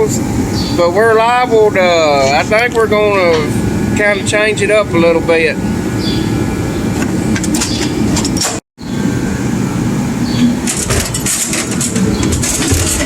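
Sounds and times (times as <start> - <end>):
heater running: 0.0 - 13.0
metal tools clanking: 2.2 - 3.5, 7.3 - 8.6, 10.3 - 13.0.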